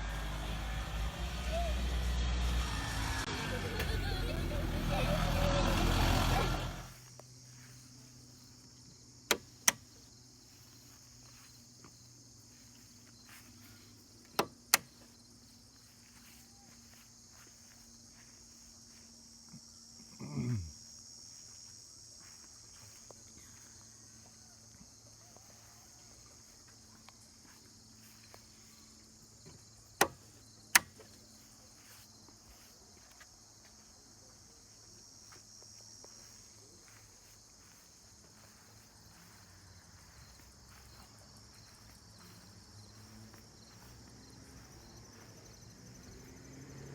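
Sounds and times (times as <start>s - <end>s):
high insect drone: 0.0s - 46.9s
sharp clicks: 9.3s - 9.9s, 30.0s - 31.0s.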